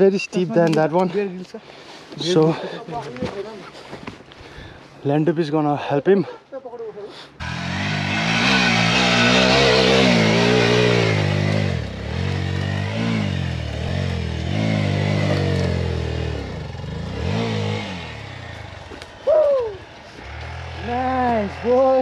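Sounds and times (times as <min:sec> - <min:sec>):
motorcycle engine revving hard: 0:07.4 - 0:19.3, 0:20.1 - 0:22.0.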